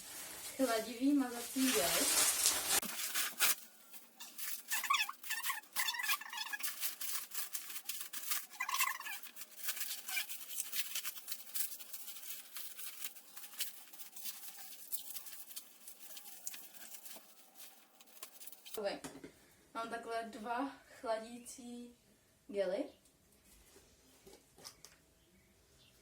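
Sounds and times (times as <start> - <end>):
packaging rustling: 0.0 - 18.8
short high-pitched squeaks: 4.2 - 12.2.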